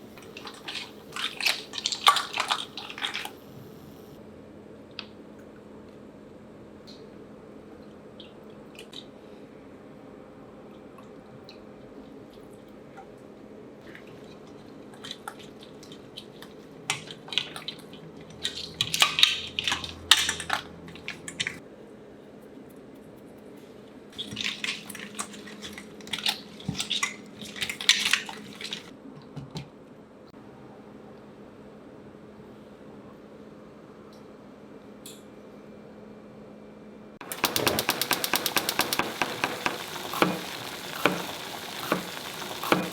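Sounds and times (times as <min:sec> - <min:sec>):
utensils clattering in a bowl: 0:24.2 - 0:28.9.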